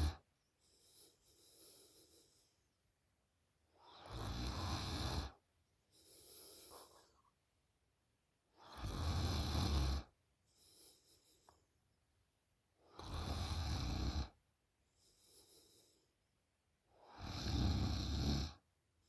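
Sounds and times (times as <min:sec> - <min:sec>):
soft breath: 0:00.6 - 0:02.8, 0:05.2 - 0:07.4, 0:10.4 - 0:11.9, 0:14.8 - 0:16.3
girl snoring loudly: 0:03.9 - 0:05.4, 0:08.6 - 0:10.1, 0:13.0 - 0:14.4, 0:17.0 - 0:18.6.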